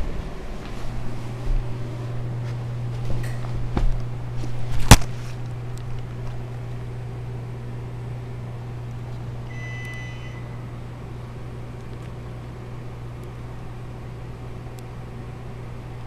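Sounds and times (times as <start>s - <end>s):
short electronic beep: 9.5s - 10.7s.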